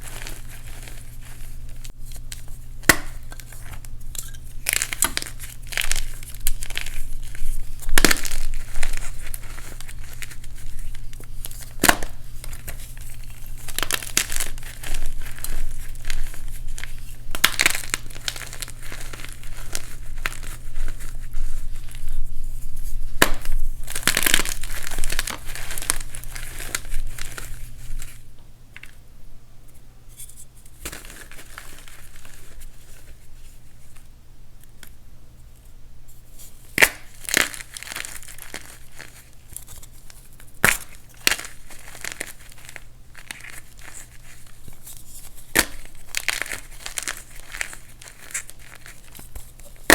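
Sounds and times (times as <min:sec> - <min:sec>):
chalk crushed by hand: 0:40.6 - 0:49.9.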